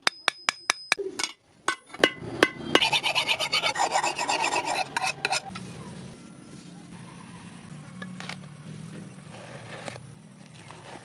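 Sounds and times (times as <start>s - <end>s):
file rasping on knife blade: 2.8s - 5.5s.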